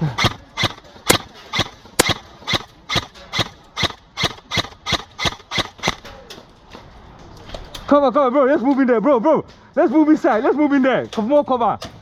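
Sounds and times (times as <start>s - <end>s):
airsoft rifle shots: 0.0s - 6.2s.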